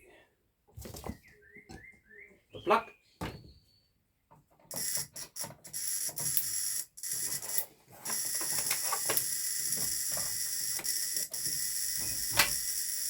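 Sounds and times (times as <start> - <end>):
crackling clicks: 7.2 - 13.0.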